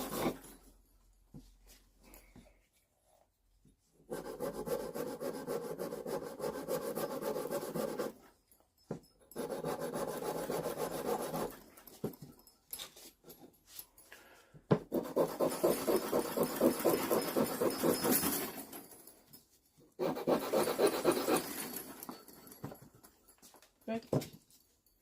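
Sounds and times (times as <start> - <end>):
sandpaper scrubbing metal: 20.0 - 21.6.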